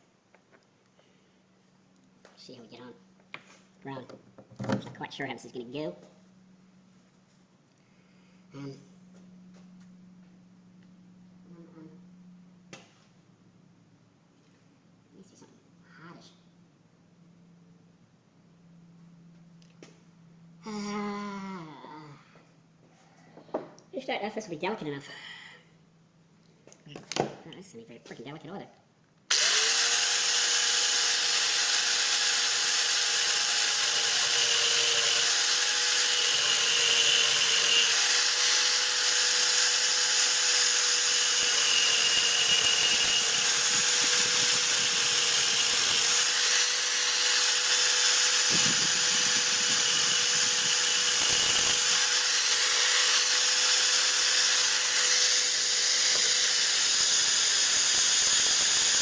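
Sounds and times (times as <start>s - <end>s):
rotary tool whining: 29.3s - 59.0s.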